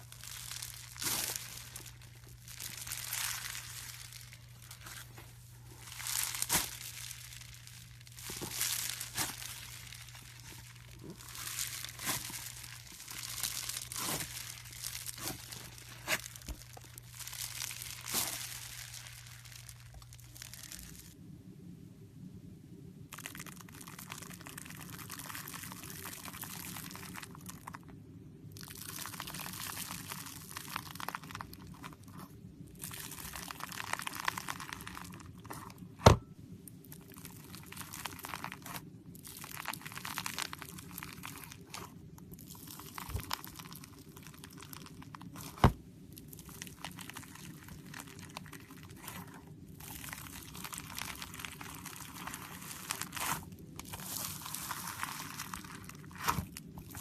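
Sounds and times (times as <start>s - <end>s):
slime crackling with bubble pops: 8.2s - 16.6s.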